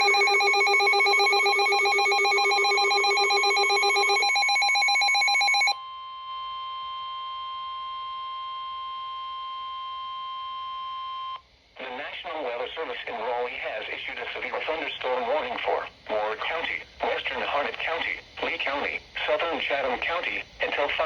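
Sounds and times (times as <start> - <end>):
rapidly pulsing alert tone: 0.0 - 5.7
steady high-pitched tone: 0.0 - 5.8.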